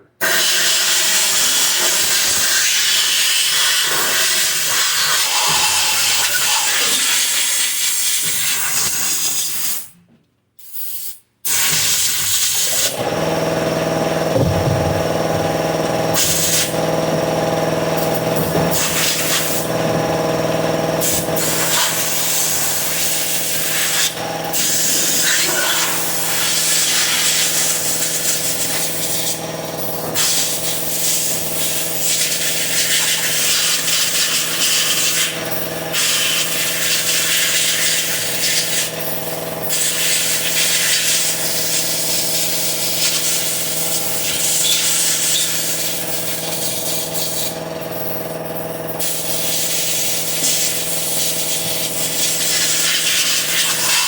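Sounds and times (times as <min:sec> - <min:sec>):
air compressor humming: 0:11.6 - 0:54.0.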